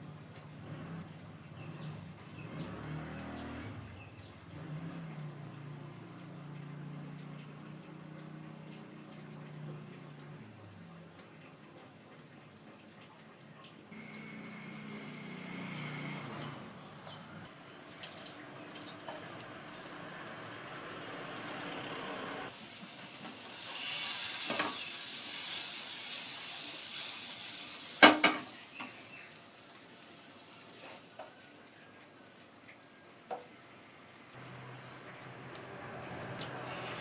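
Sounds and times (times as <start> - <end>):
food sizzling in skillet: 18.2 - 32.4, 35.6 - 37.0.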